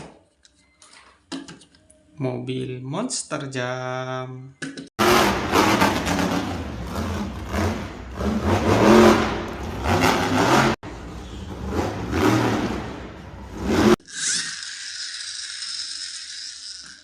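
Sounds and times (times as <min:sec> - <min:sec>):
truck engine revving: 0:05.0 - 0:14.0.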